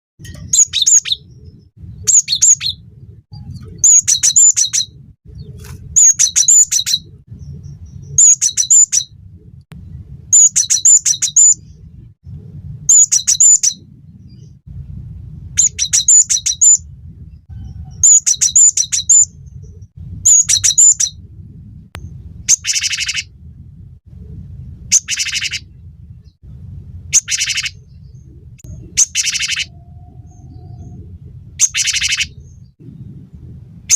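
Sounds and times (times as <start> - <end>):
bird singing high repeated notes: 0.2 - 9.2, 9.9 - 11.9, 12.9 - 14.6, 15.6 - 16.9, 17.5 - 21.2, 22.5 - 23.3, 24.9 - 26.4, 27.1 - 33.1
low steady rumble: 0.2 - 33.9.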